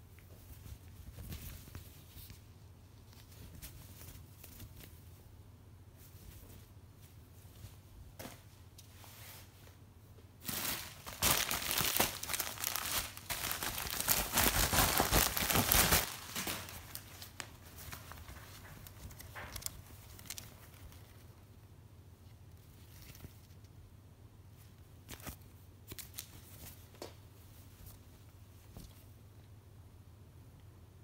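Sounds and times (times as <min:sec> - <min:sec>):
packaging crumpling and tearing: 0:10.4 - 0:21.0.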